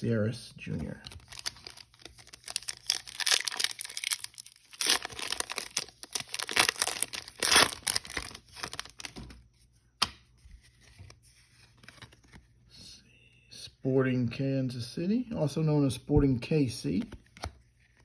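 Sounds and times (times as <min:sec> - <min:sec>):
plastic wrapper tearing and crinkling: 0:01.0 - 0:09.3.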